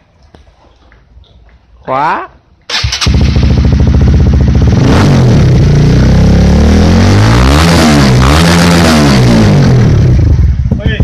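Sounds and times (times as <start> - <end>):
motorcycle engine revving: 2.7 - 11.0.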